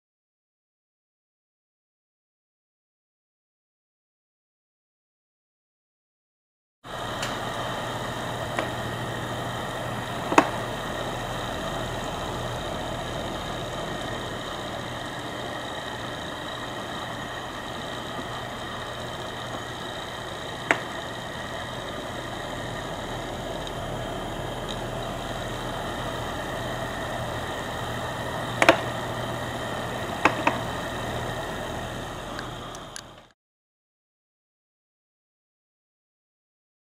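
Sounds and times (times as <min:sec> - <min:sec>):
fan humming: 0:06.9 - 0:33.4.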